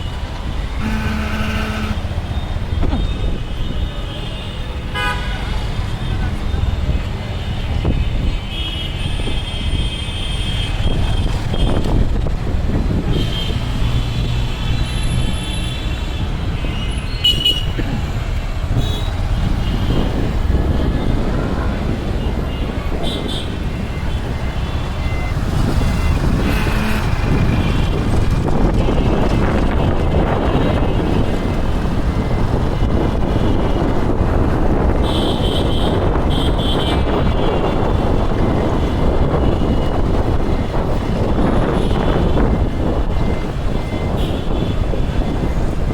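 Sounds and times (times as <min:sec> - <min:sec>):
rumble of engines and tyres: 0:00.0 - 0:45.9
vehicle horns tooting: 0:00.5 - 0:05.7, 0:22.2 - 0:28.0, 0:35.0 - 0:40.0
wind buffeting microphone: 0:10.7 - 0:15.3, 0:17.6 - 0:45.9.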